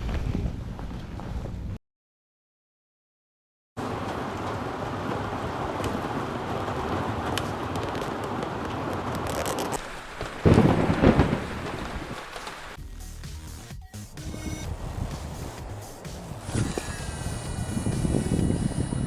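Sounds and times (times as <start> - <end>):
wind buffeting the microphone: 14.7 - 19.0.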